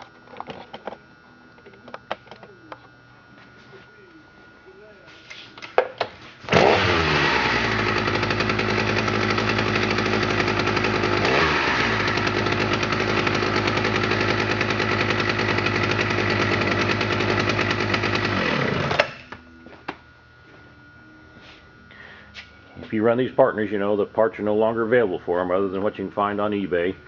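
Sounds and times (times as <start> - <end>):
chainsaw engine running: 6.4 - 19.9.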